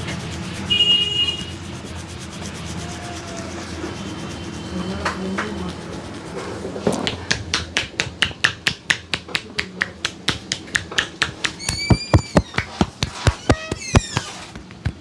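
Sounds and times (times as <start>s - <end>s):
hands slapping in massage: 6.9s - 15.0s.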